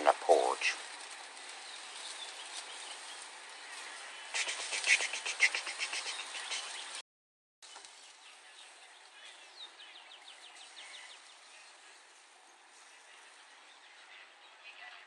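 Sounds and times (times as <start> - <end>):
outdoor hiss: 0.0 - 7.0
chirping trill: 4.4 - 6.8.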